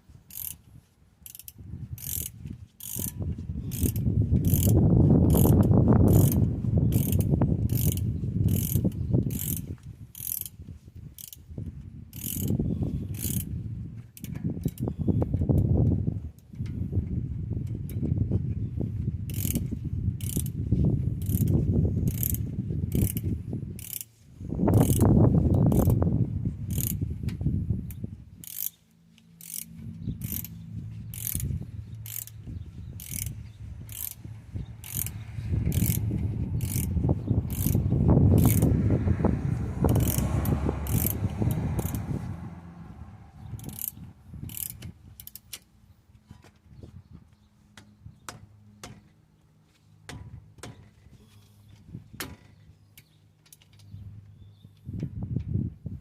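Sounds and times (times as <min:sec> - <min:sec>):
ratchet wrench clicking: 0:00.3 - 0:00.6, 0:01.2 - 0:10.6, 0:11.2 - 0:11.5, 0:12.1 - 0:13.5, 0:14.2 - 0:15.7, 0:19.3 - 0:20.6, 0:21.2 - 0:26.0, 0:26.6 - 0:27.0, 0:27.9 - 0:38.7, 0:39.9 - 0:42.3, 0:43.5 - 0:45.7
low rumble: 0:24.4 - 0:45.0.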